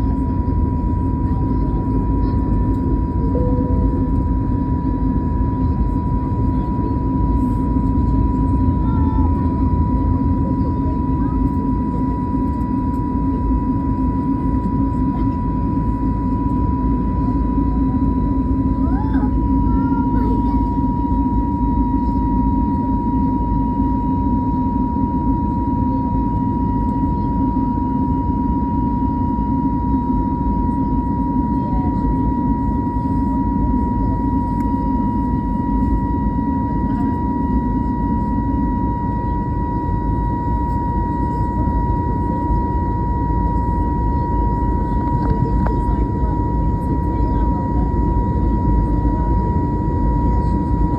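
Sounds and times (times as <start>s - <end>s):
jet engine high whine: 0.0s - 50.9s
jet engine rumble: 0.0s - 50.9s.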